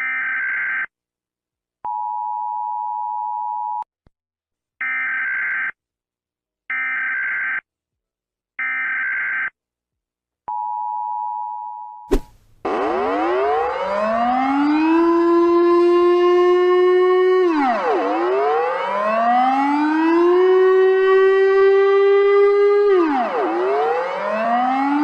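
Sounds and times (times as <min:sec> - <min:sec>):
civil defense siren wailing: 0:12.7 - 0:25.0.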